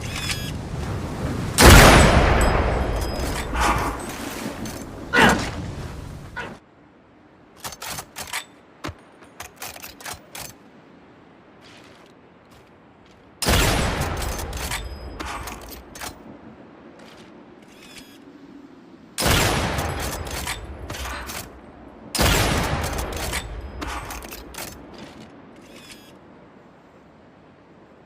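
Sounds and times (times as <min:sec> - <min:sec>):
rifle shot bangs: 0:01.6 - 0:02.7.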